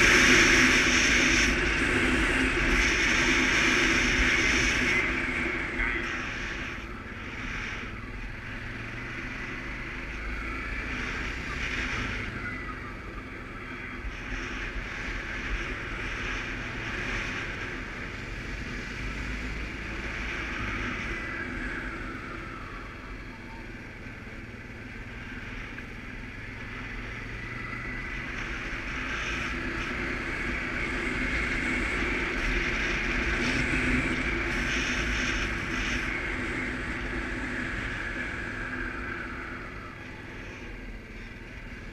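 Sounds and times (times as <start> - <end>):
atv engine running: 0.0 - 41.9
wind noise on microphone: 26.8 - 41.0.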